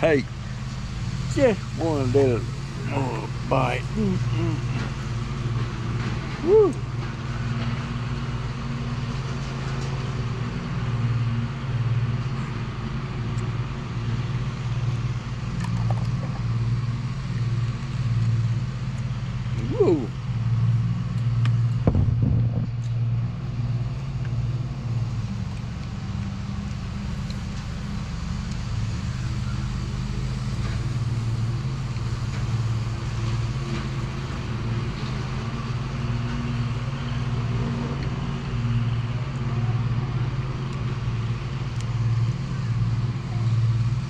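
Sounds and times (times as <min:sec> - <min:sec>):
car engine idling: 0:00.0 - 0:07.1, 0:14.8 - 0:33.7.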